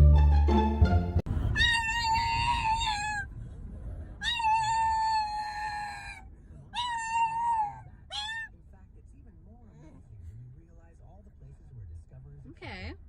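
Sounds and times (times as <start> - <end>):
music: 0.0 - 1.3
cat yowling: 1.5 - 3.3, 4.2 - 8.5.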